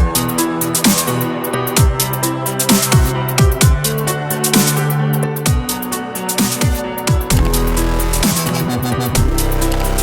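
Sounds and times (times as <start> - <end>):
electronic dance music: 6.4 - 10.0.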